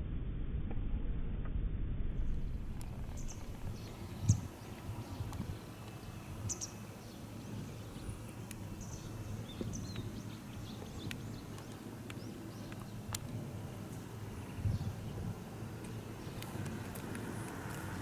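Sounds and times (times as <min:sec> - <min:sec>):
low background rumble: 0:00.0 - 0:18.0
faint irregular clicks: 0:02.8 - 0:06.0, 0:08.3 - 0:08.8, 0:09.4 - 0:14.1, 0:15.8 - 0:18.0
faint bird chirps: 0:02.8 - 0:13.1.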